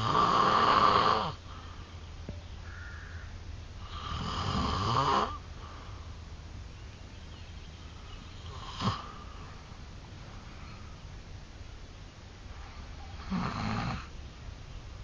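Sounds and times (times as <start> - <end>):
man snoring: 0.0 - 1.4, 3.8 - 5.4, 8.5 - 9.1, 13.2 - 14.1.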